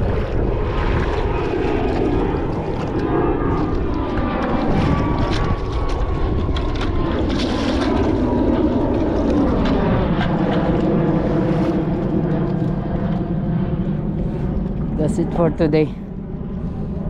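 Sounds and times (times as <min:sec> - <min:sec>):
engine drone: 0:00.0 - 0:17.0
loud low rumble: 0:00.0 - 0:17.0.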